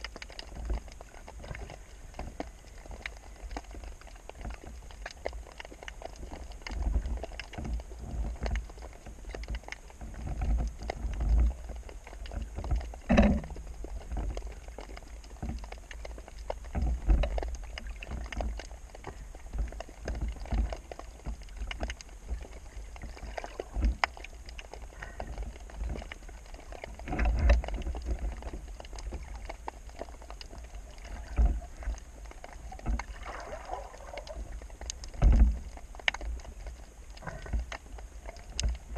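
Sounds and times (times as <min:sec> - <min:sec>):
muffled water sloshing: 0:00.0 - 0:38.9.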